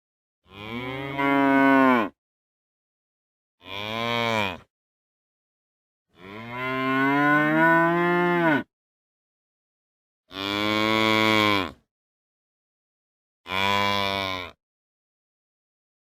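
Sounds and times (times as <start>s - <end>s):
cow mooing: 0.5s - 2.2s, 3.6s - 4.7s, 6.2s - 8.7s, 13.5s - 14.6s.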